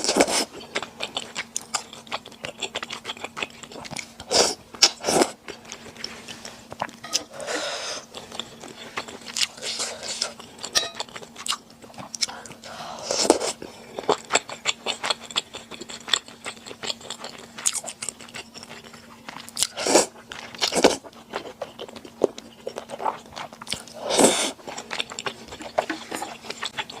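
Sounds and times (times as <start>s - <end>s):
faint steady hum: 0.0s - 27.0s
wet chewing clicks: 0.1s - 7.0s, 14.0s - 27.0s.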